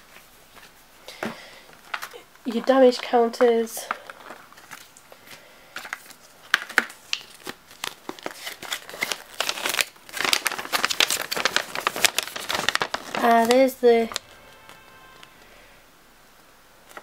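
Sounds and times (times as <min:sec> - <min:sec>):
packaging crinkling and rustling: 0:01.7 - 0:15.4.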